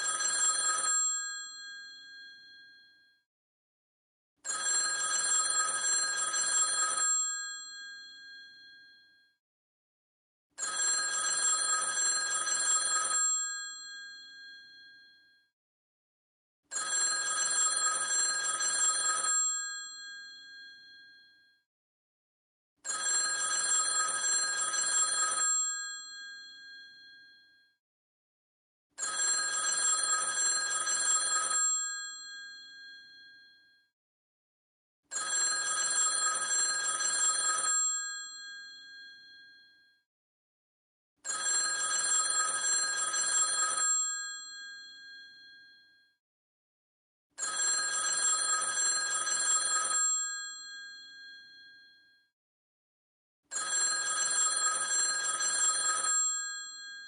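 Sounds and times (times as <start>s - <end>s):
telephone mechanical bell ringing: 0.0s - 2.6s, 4.5s - 7.6s, 10.6s - 14.8s, 16.7s - 21.1s, 22.9s - 27.1s, 29.0s - 33.5s, 35.1s - 39.5s, 41.3s - 45.5s, 47.4s - 51.6s, 53.5s - 56.8s.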